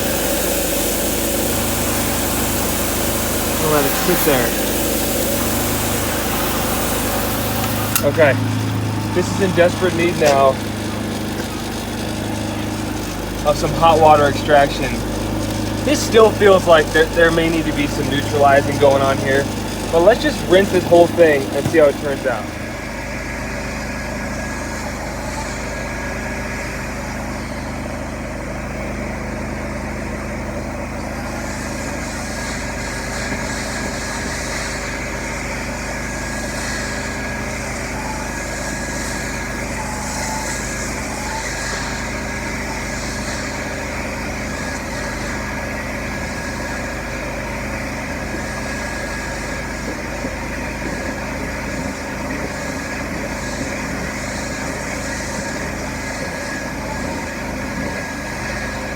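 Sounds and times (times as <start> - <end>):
carpet cleaning machine drone: 0.0 - 58.9
hissing water extraction: 0.0 - 58.9.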